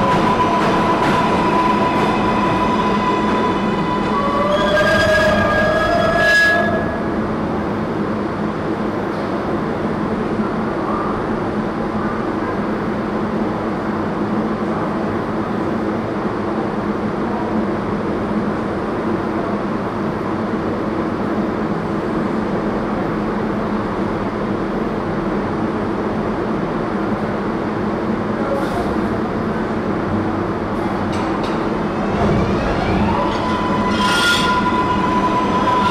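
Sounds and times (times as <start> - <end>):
high-pitched train squeal: 0.0 - 7.2, 32.0 - 35.9
subway train rumble: 0.0 - 35.9.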